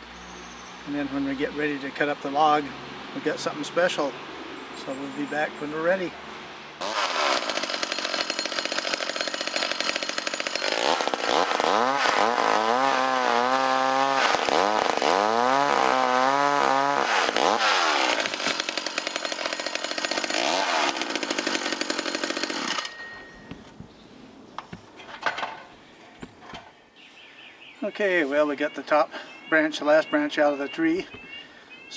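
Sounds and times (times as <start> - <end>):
chainsaw revving: 6.8 - 22.9.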